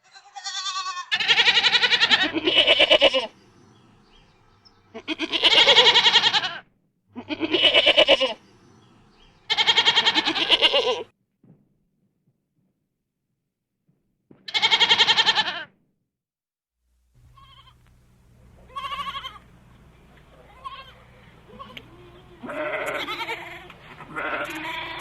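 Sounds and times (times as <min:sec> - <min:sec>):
goats bleating: 0:00.0 - 0:03.4, 0:04.1 - 0:08.5, 0:09.5 - 0:11.1, 0:14.5 - 0:15.7, 0:17.3 - 0:17.9, 0:18.6 - 0:19.6, 0:20.2 - 0:25.0
steady low hum: 0:01.4 - 0:06.1, 0:07.1 - 0:09.5, 0:16.9 - 0:25.0.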